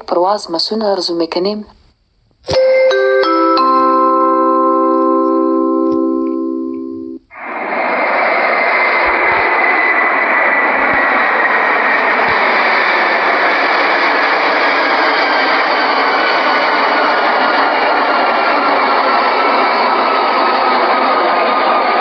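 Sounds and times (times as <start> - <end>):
cabin chime: 2.5 - 7.2
jet engine roar: 7.3 - 22.0.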